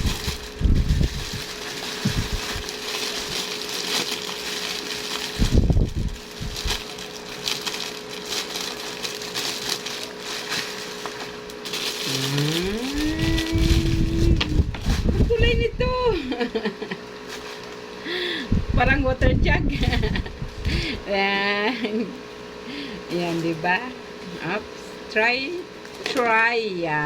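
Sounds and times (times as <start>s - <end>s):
packaging crinkling and rustling: 0.0s - 15.6s, 17.2s - 17.9s, 23.1s - 23.9s.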